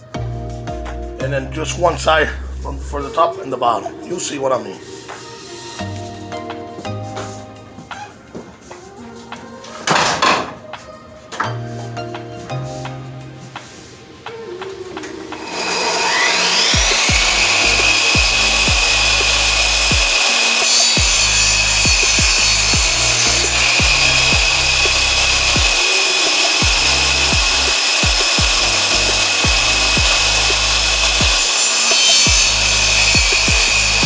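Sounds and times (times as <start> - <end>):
electric saw motor whining: 15.3 - 34.0.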